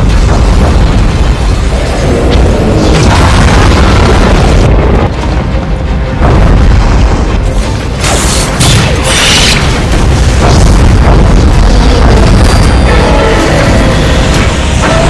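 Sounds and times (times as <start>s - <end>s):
deep booming rumble: 0.0s - 15.0s
music: 0.0s - 15.0s
hissing noise bursts: 8.0s - 10.9s.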